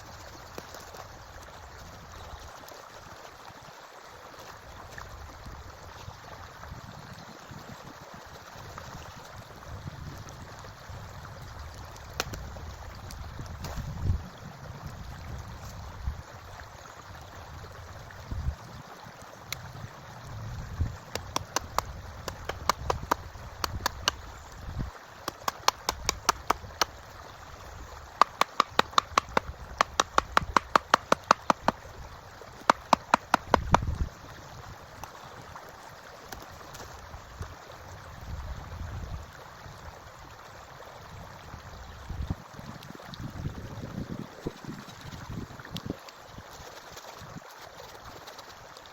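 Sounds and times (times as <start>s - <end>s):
stream running: 0.0s - 48.9s
hammer driving nails into wood: 25.3s - 26.5s, 28.2s - 31.7s, 32.7s - 33.7s.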